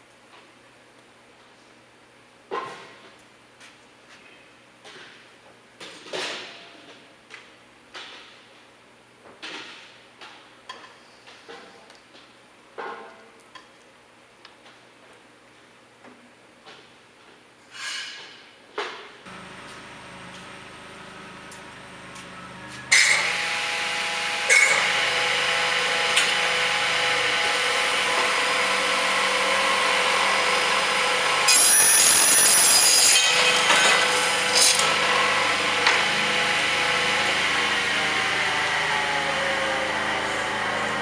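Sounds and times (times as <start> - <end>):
saw blade motors whining: 19.3 - 41.0
saw blade cutting metal: 22.8 - 41.0.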